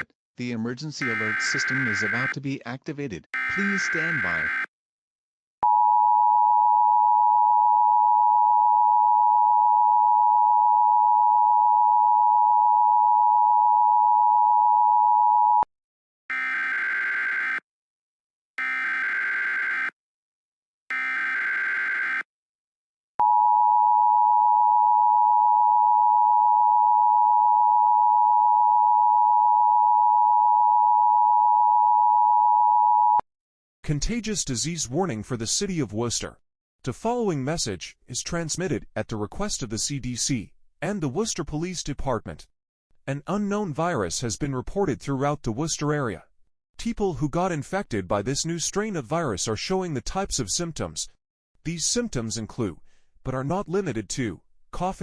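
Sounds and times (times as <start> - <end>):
data bursts: 1.0 - 2.4, 3.4 - 4.7
emergency alert attention tone: 1.0 - 2.4, 3.4 - 4.7.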